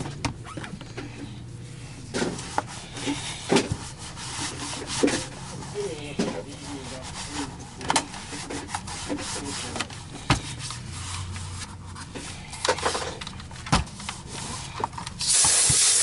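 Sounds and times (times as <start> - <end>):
cloth wiping a brush head: 2.2 - 12.4
cleaning spray spritz: 15.2 - 16.0.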